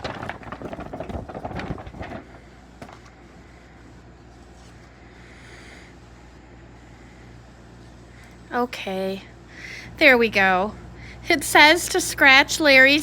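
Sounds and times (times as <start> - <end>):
book pages flapping and rustling: 0.0 - 3.2
low room hum: 0.0 - 13.0.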